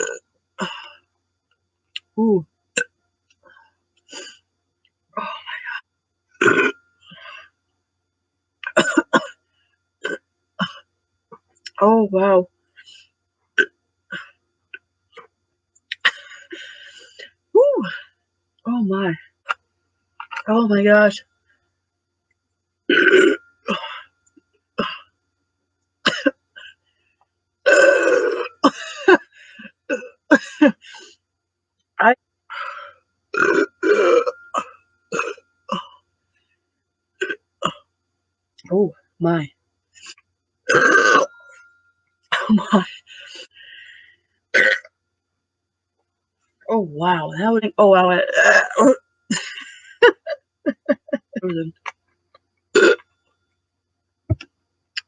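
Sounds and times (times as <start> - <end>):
woman burping: 0.0 - 1.0, 2.2 - 2.9, 6.4 - 6.8, 8.6 - 9.4, 10.0 - 10.8, 15.9 - 16.5, 20.2 - 20.5, 22.9 - 24.1, 24.8 - 25.1, 26.0 - 26.4, 27.6 - 30.8, 33.3 - 36.0, 37.2 - 37.9, 40.7 - 41.7, 42.3 - 43.4, 44.5 - 44.9, 48.2 - 52.0, 52.7 - 53.1.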